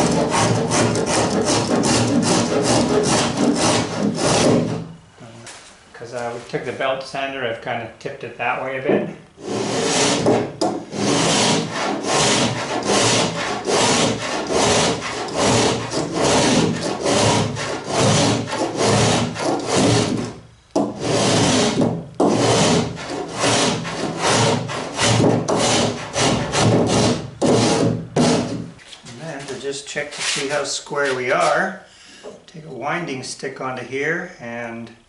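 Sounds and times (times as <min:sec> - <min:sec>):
spokeshave shaving wood: 0:10.9 - 0:20.2.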